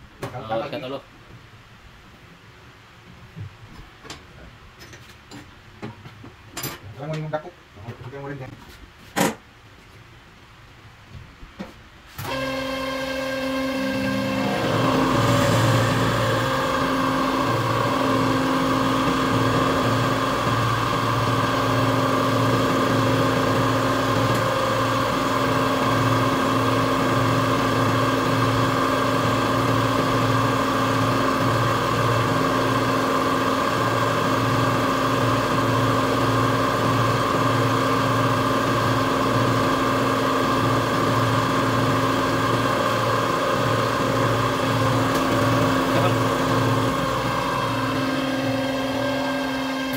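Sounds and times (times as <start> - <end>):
machine motor humming and pulsing: 12.2 - 49.9.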